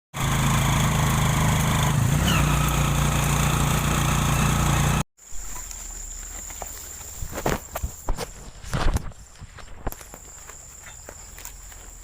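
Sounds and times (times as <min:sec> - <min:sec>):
small engine running: 0:00.2 - 0:05.1.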